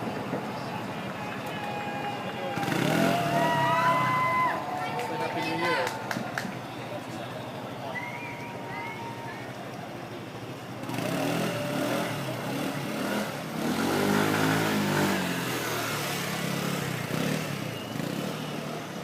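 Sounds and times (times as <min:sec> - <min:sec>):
motor engine passing by: 0:02.4 - 0:06.6, 0:10.8 - 0:19.0.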